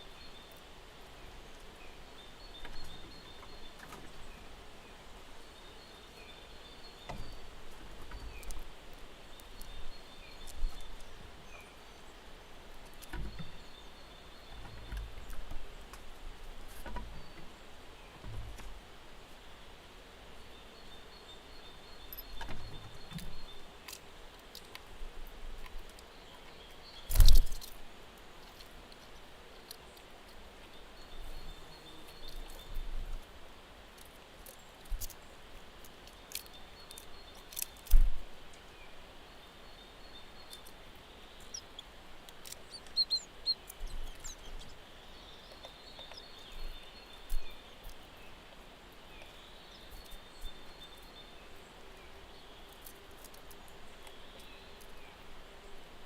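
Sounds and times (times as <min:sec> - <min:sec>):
steady low hiss: 0:00.0 - 0:56.0
bird chirps: 0:38.7 - 0:48.3.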